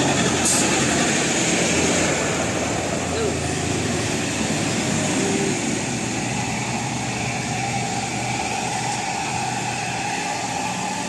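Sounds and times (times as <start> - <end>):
traffic noise: 0.0 - 11.0.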